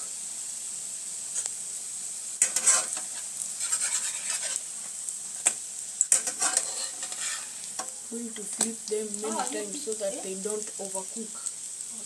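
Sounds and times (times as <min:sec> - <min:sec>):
bread sizzling in oil: 0:00.0 - 0:12.0
spatula scraping a pan: 0:02.4 - 0:09.8.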